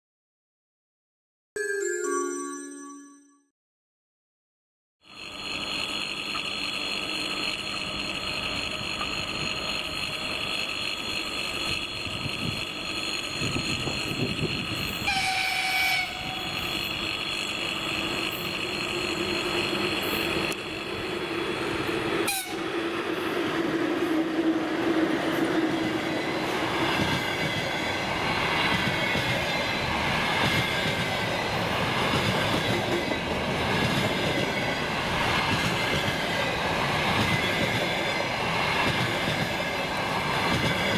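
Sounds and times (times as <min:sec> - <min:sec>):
train horn blast: 0:15.0 - 0:16.6, 0:22.2 - 0:22.7.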